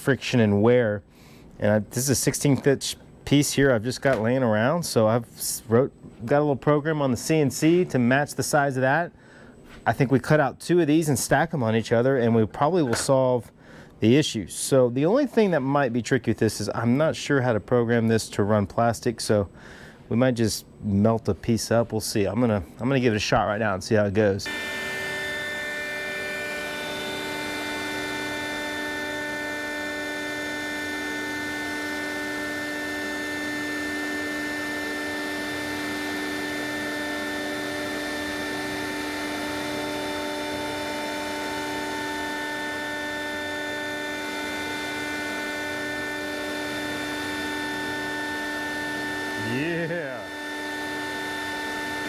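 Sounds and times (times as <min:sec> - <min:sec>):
router spindle whine: 0:24.4 - 0:52.0.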